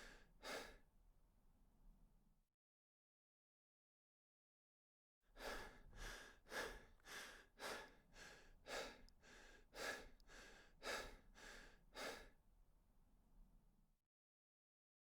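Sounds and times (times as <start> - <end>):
person breathing hard: 0.0 - 0.8, 5.4 - 12.4.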